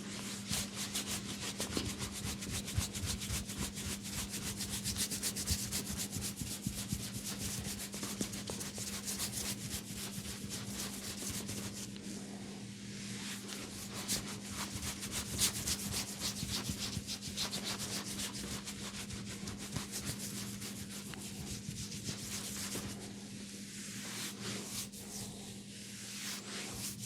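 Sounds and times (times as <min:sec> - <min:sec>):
fingers scratching hair and scalp: 0:00.4 - 0:11.8, 0:13.5 - 0:23.0.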